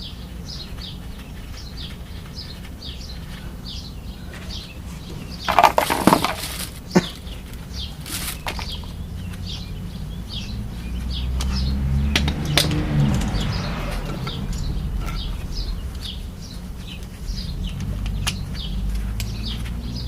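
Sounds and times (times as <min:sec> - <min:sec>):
birds chirping: 0:00.0 - 0:20.0
metal tools clanking: 0:05.1 - 0:07.3
low rumble: 0:09.0 - 0:19.5.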